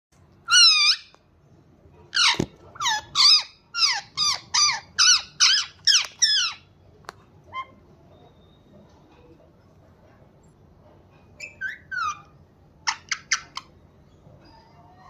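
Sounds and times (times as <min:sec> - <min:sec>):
parrot calling: 0:00.5 - 0:01.2, 0:02.1 - 0:06.7, 0:07.4 - 0:08.6, 0:11.3 - 0:13.8.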